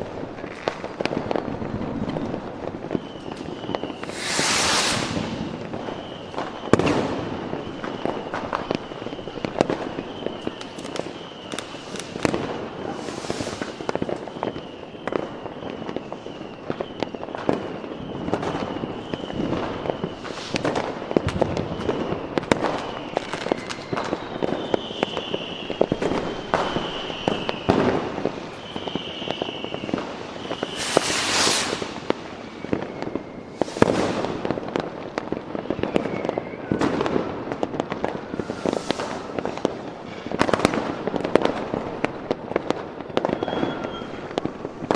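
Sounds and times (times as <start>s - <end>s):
fireworks bangs and crackling: 0.0s - 44.9s
hissing firework bursts: 0.2s - 44.9s
high wavering whistle: 2.9s - 17.2s, 17.8s - 33.9s, 38.2s - 39.6s, 43.3s - 44.3s.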